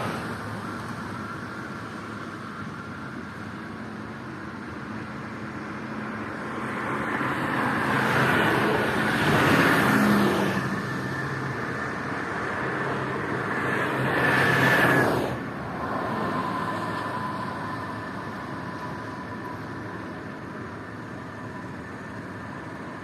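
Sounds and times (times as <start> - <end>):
steady road noise: 0.0 - 23.0
vehicles passing at speed: 0.0 - 23.0.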